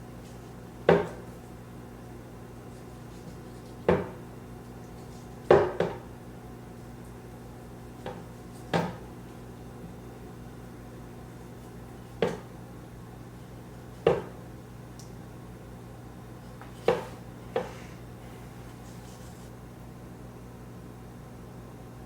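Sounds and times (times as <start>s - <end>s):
knife knocking on cutting board: 0.9s - 1.3s, 3.9s - 4.2s, 5.4s - 6.1s, 8.0s - 9.0s, 12.2s - 12.5s, 14.0s - 14.4s, 16.8s - 17.8s.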